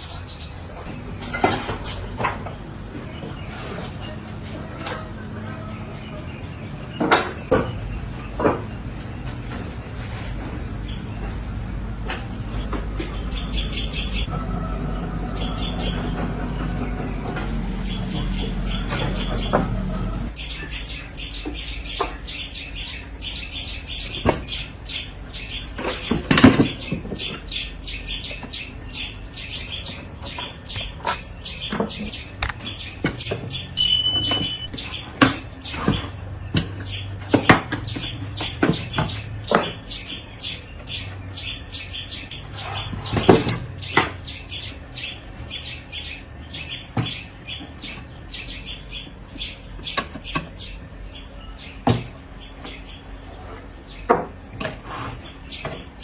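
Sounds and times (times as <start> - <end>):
birds chirping rapidly: 0.0 - 56.0
sharp knocks and clatters: 6.9 - 9.8, 53.9 - 54.9.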